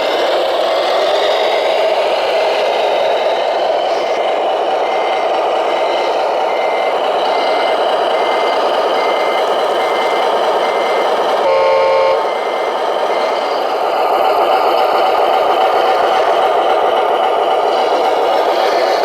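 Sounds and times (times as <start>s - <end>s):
model truck engine running: 0.0s - 19.0s
reversing beeper: 2.6s - 16.3s.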